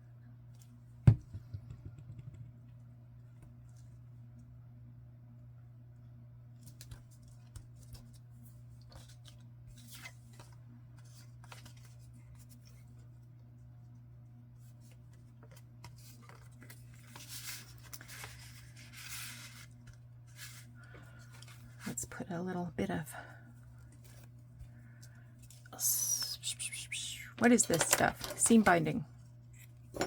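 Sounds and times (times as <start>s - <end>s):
paper rustling and tearing: 15.4s - 20.7s.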